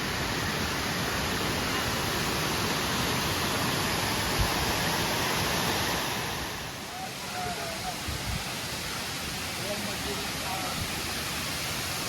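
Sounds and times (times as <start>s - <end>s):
waterfall rushing: 0.0s - 12.0s.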